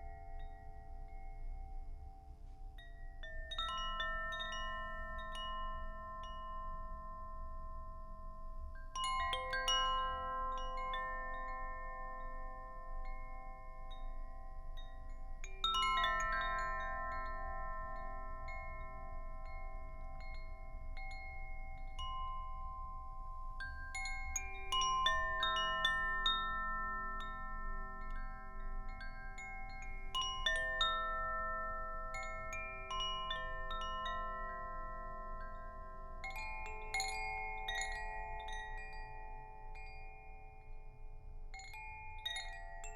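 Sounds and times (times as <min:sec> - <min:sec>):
metal chimes ringing: 0:09.0 - 0:40.1.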